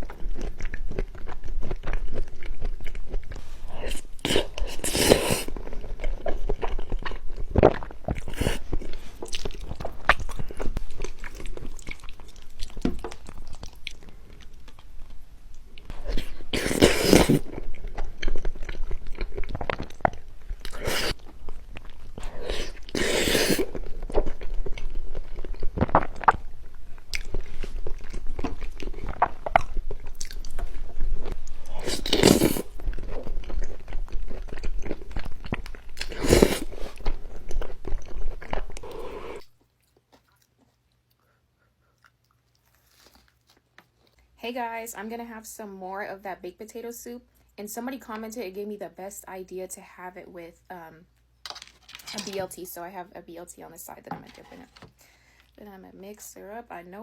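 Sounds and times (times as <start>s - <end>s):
chewing with wet mouth noises: 0.0s - 44.3s
crunchy bites: 31.7s - 39.5s.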